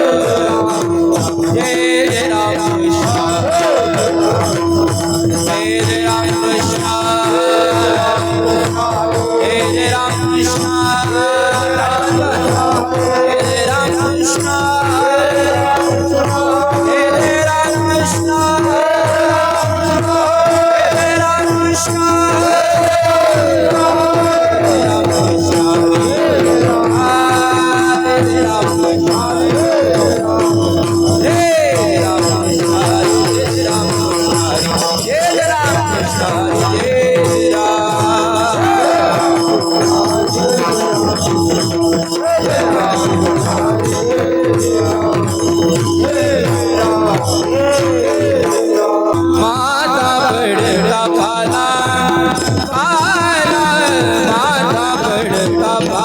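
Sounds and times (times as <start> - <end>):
hand cymbals jingling: 0.0 - 56.0.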